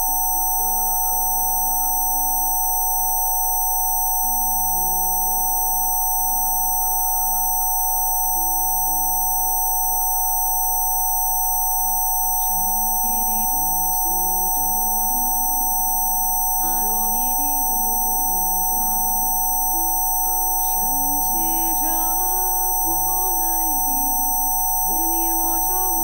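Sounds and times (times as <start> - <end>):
steady pure tones: 11.3 - 26.0.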